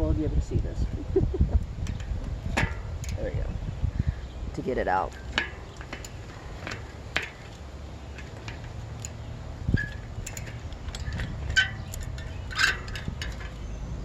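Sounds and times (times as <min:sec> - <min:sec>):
light metallic clicks and clinks: 0:01.8 - 0:03.4, 0:05.1 - 0:13.8.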